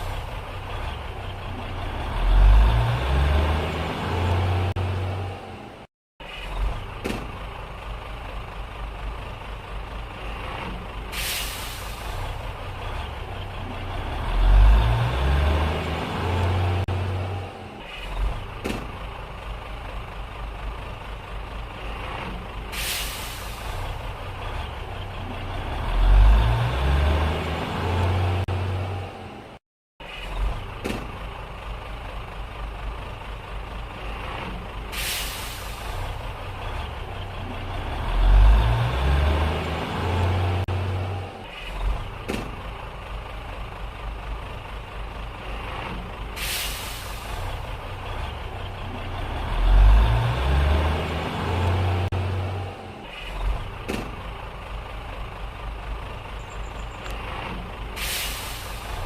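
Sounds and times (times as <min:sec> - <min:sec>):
truck engine idling and revving: 0:00.0 - 0:59.0
air brake hisses: 0:11.1 - 0:12.4, 0:22.7 - 0:24.0, 0:34.9 - 0:36.2, 0:46.3 - 0:47.6, 0:58.0 - 0:59.0.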